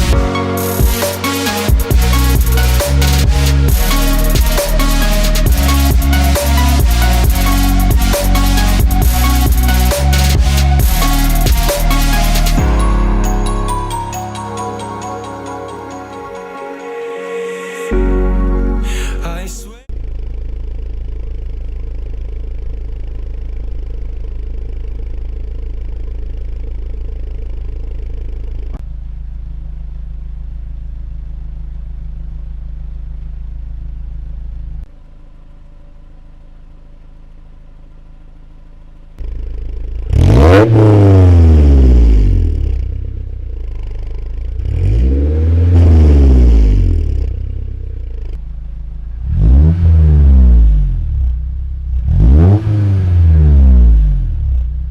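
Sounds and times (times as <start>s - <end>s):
engine revving: 0.0s - 13.5s, 39.2s - 43.0s, 43.7s - 48.4s, 49.2s - 54.9s
car engine idling: 0.0s - 13.9s, 19.9s - 44.6s, 46.7s - 49.4s.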